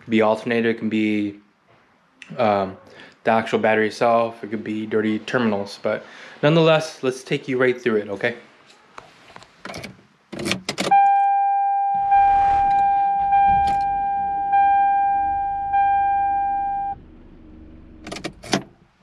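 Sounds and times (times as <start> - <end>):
car warning chime: 10.9 - 12.2, 13.0 - 17.0
low rumble: 11.8 - 18.0.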